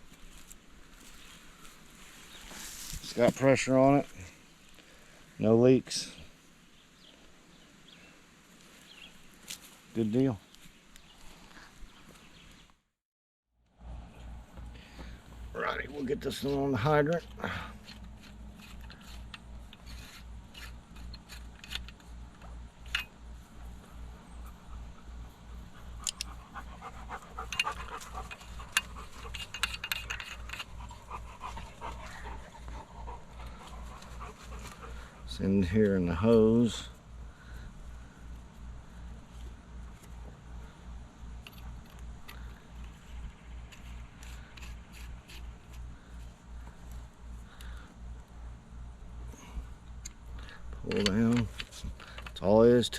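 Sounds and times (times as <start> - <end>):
metal fitting scraping and clicking: 16.4 - 23.2, 27.4 - 31.2, 41.4 - 46.3
metal hose fitting clicking: 21.0 - 23.2, 27.5 - 30.8.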